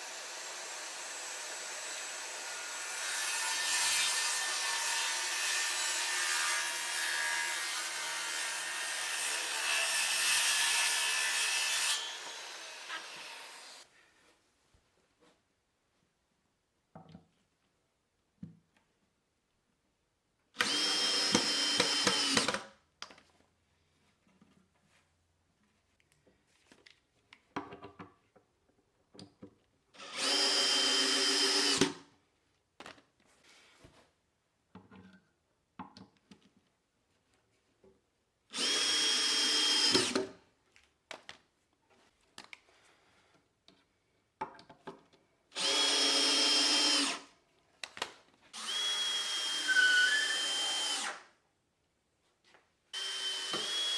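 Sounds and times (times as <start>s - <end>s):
electric drill running: 20.6s - 22.6s, 45.6s - 47.2s, 48.6s - 51.2s, 53.0s - 53.9s.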